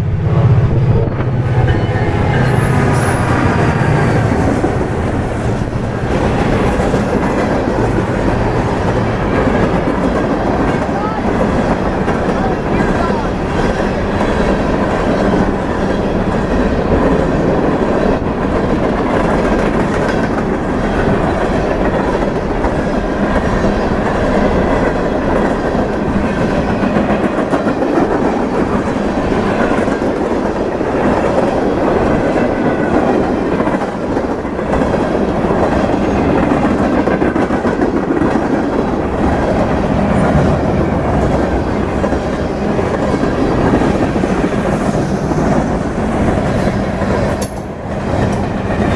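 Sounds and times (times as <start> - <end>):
freight train wheels on rails: 0.0 - 48.9.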